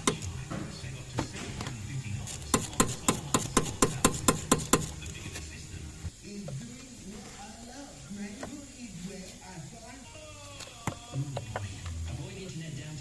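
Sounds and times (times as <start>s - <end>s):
ratchet wrench clicking: 2.3s - 5.0s.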